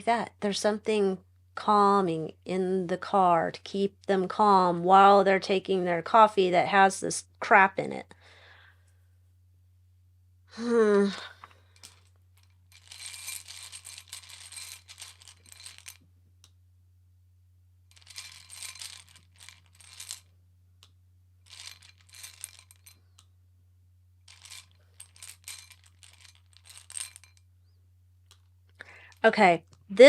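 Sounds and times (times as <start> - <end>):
metal tokens clinking: 11.7 - 16.0, 17.9 - 20.3, 21.4 - 23.2, 24.3 - 27.5.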